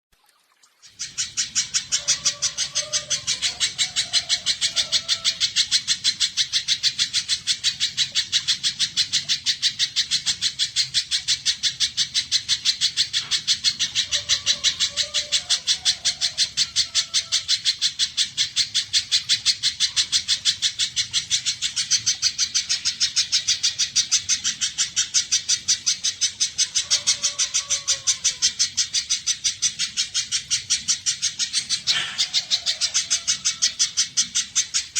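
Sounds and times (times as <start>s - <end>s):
bird calling sharp high chips: 29.2s - 34.9s.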